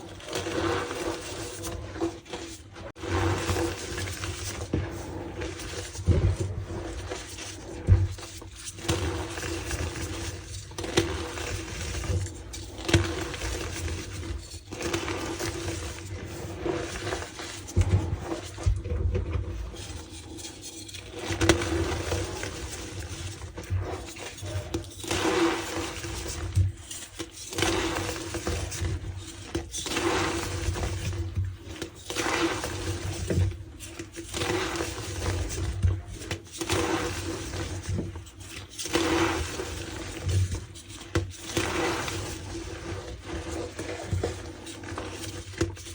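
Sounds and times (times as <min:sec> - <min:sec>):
chalk crumbling and squeaking: 0:19.5 - 0:42.6.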